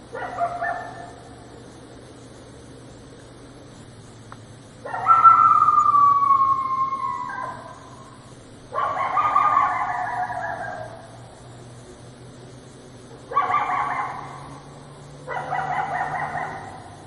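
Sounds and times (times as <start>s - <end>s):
coyote howling: 4.8s - 11.2s, 13.3s - 17.0s.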